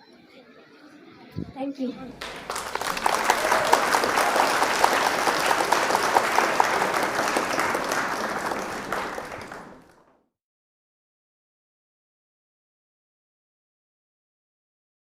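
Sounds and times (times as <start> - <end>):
audience applauding: 2.1 - 10.2.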